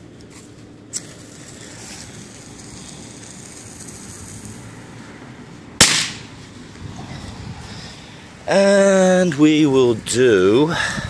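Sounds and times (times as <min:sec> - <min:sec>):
firecracker fuse hissing: 0:00.0 - 0:08.4.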